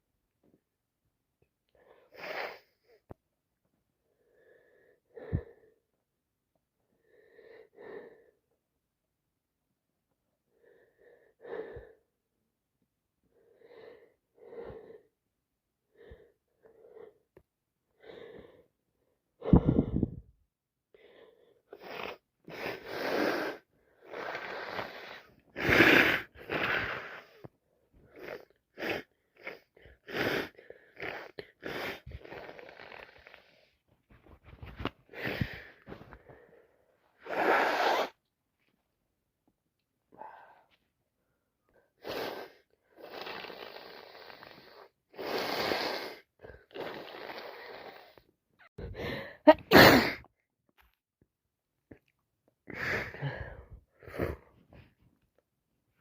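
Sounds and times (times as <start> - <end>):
person sniffling: 37.2 - 38.2, 48.8 - 50.3, 52.7 - 54.9
person sneezing: 49.5 - 50.3.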